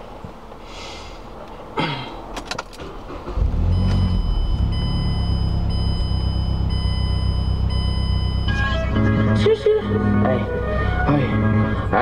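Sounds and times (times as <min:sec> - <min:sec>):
car engine idling: 0:00.0 - 0:12.0
ignition key clicks: 0:02.3 - 0:04.1
high electronic tone: 0:03.7 - 0:11.8.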